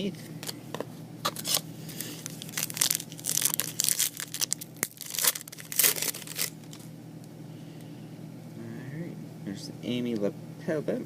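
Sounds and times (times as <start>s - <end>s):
foil wrapper tearing and crinkling: 1.3s - 6.9s.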